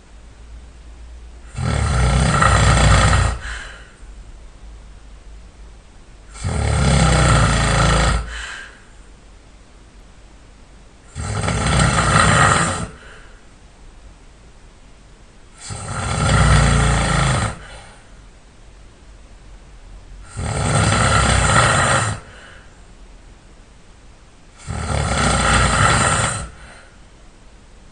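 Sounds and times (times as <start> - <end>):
person snoring loudly: 1.4 - 4.0, 6.3 - 8.8, 11.1 - 13.3, 15.6 - 18.0, 20.2 - 22.6, 24.6 - 26.9
quiet breathing: 1.4 - 4.2, 6.3 - 9.2, 11.1 - 13.6, 15.5 - 18.3, 20.2 - 22.9, 24.6 - 27.1.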